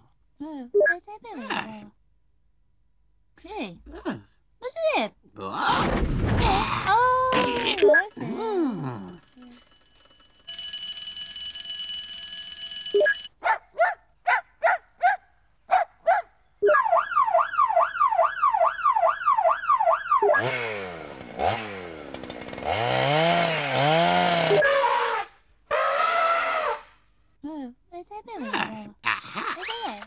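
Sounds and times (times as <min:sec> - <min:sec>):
electronic chirps: 0:12.9 - 0:13.3
siren-like electronic warble: 0:16.6 - 0:20.4.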